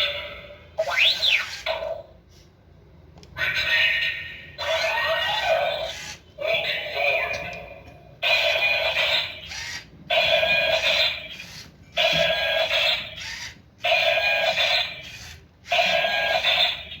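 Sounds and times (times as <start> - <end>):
buzzy ringing toy robot effect: 8.2 - 17.0.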